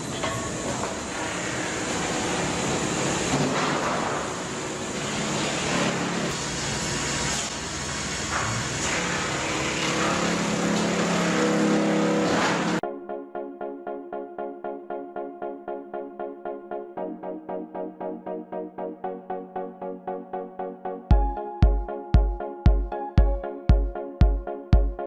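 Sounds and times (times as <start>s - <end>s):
engine-powered machine running hard: 1.1s - 12.8s.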